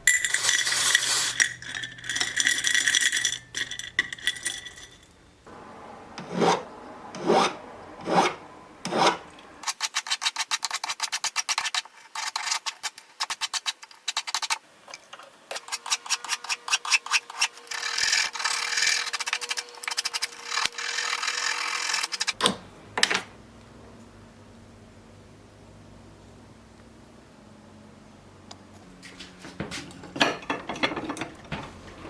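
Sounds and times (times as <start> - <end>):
low steady hum: 1.4 - 9.6
hand tool rasping on metal: 15.5 - 22.4.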